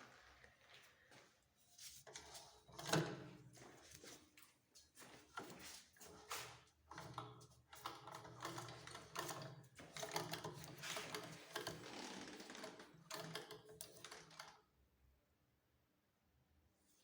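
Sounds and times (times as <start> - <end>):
sewing machine clattering: 6.9 - 14.6.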